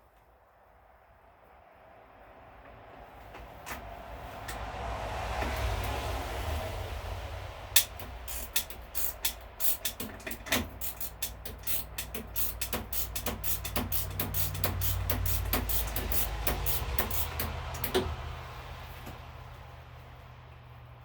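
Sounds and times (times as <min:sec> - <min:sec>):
ratchet wrench clicking: 0:07.8 - 0:18.1.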